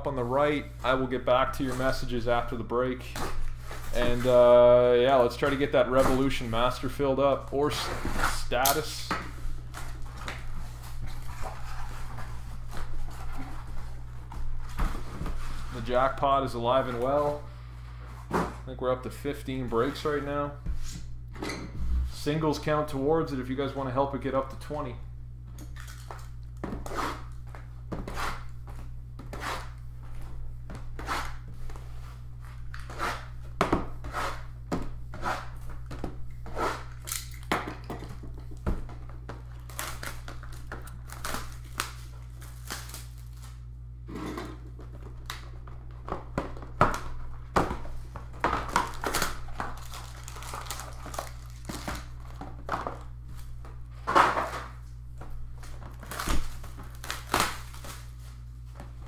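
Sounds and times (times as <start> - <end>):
plastic wrapping ripping: 39.5 - 43.6, 48.6 - 53.1, 55.7 - 58.4
plastic wrapping crinkling: 39.5 - 43.7, 48.6 - 53.6, 55.6 - 58.6.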